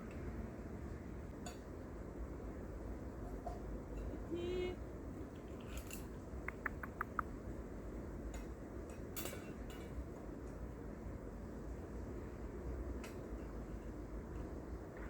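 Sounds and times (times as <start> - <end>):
light clinks: 5.6 - 7.2.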